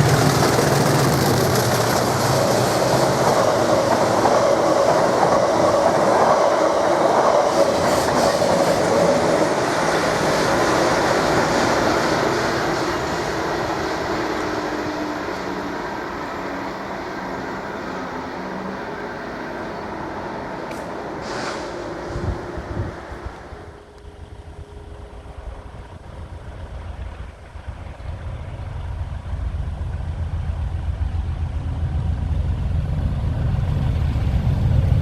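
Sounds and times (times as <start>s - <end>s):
train wheels clattering over rails: 0.0s - 19.8s.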